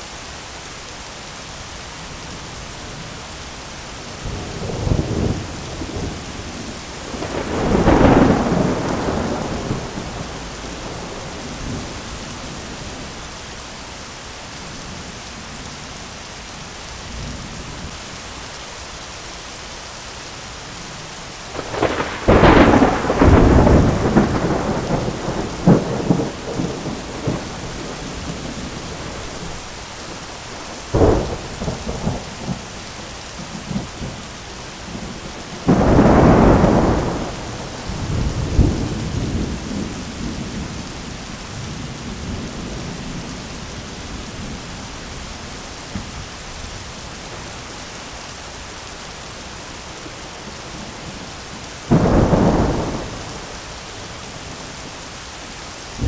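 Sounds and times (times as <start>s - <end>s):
steady rain: 0.0s - 56.0s
thunder rumbling and cracking: 4.2s - 12.3s, 21.5s - 32.8s, 34.9s - 44.6s, 51.9s - 54.5s.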